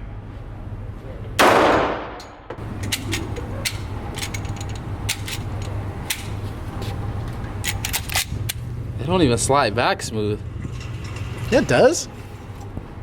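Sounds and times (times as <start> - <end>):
steady low hum: 0.0 - 13.0
handgun shot with echo: 1.4 - 2.5.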